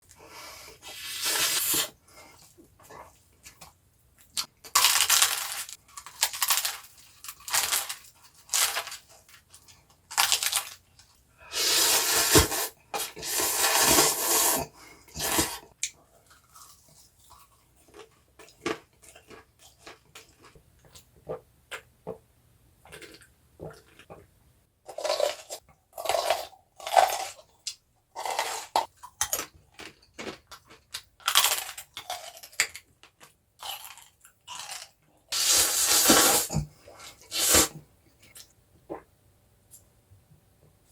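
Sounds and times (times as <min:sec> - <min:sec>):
crunchy bites and chewing: 0:28.2 - 0:36.6.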